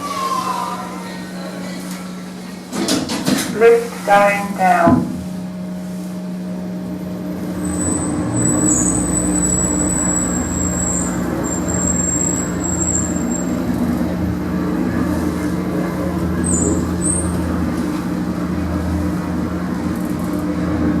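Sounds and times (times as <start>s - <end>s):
lift machine hum: 0.0s - 21.0s
thin high whine: 6.0s - 13.8s
low rumble: 6.6s - 14.6s.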